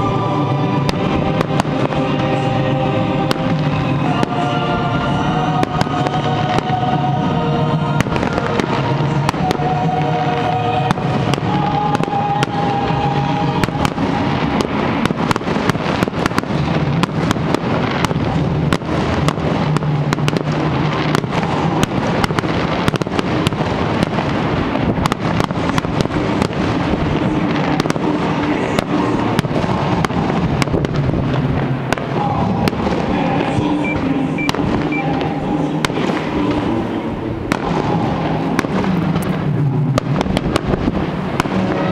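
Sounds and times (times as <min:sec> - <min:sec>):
fireworks bangs and crackles: 0:00.0 - 0:41.9
music playing: 0:00.0 - 0:41.9.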